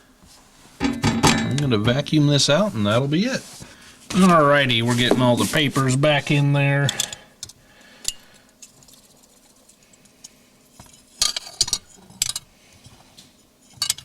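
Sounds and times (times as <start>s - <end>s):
papers rustling: 3.4s - 6.3s.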